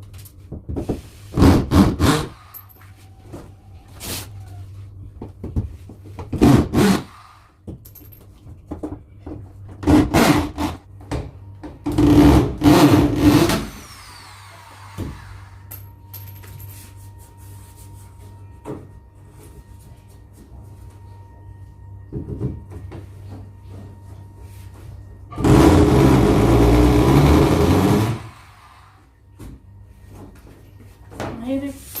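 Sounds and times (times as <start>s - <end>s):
electric drill drilling into wood: 12.0s - 15.6s, 25.4s - 29.0s.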